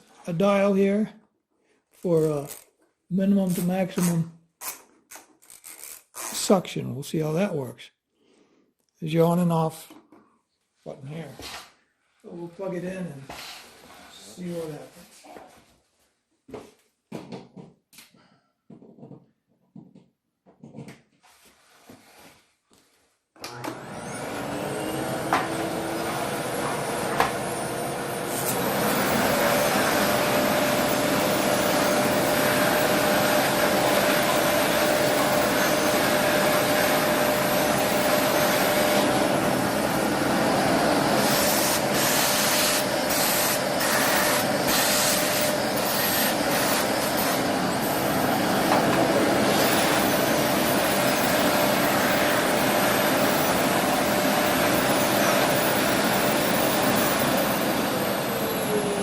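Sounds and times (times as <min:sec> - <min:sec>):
vacuum cleaner whine: 0:23.4 - 0:59.0.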